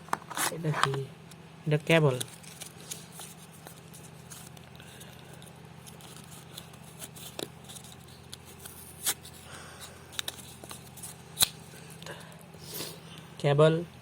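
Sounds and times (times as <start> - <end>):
steady low hum: 0.0 - 14.0
packaging clicks and rustles: 2.1 - 11.6.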